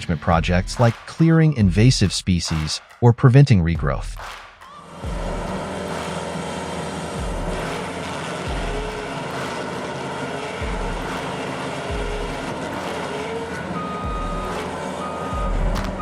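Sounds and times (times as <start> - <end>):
heavy machinery engine rumbling: 4.8 - 16.0
high warning alarm beeps: 11.9 - 16.0.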